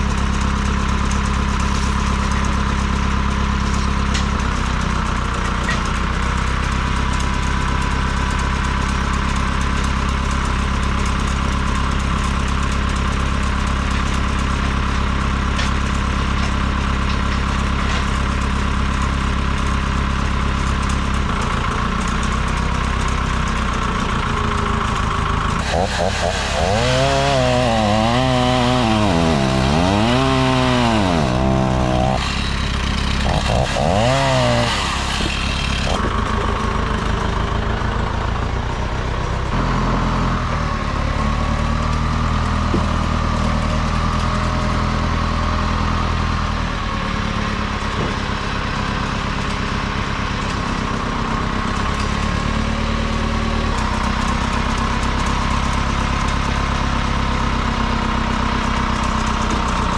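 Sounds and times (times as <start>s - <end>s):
gasoline engine revving: 25.6s - 37.0s.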